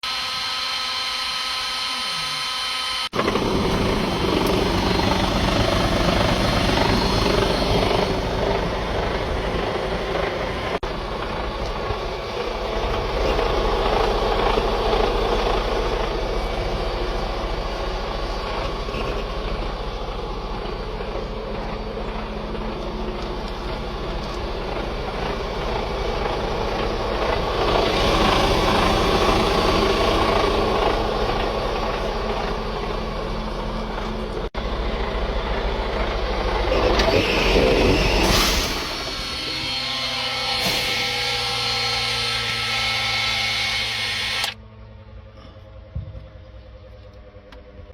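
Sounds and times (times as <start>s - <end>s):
diesel engine cranking on starter: 3.1s - 39.5s.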